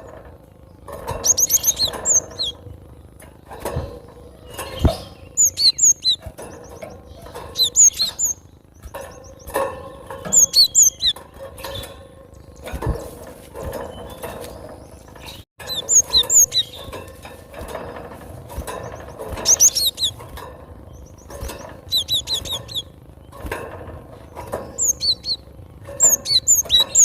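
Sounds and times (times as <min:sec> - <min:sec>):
dull thumps: 0:12.6 - 0:22.6
bird singing whistled notes: 0:21.9 - 0:22.9, 0:24.8 - 0:25.4.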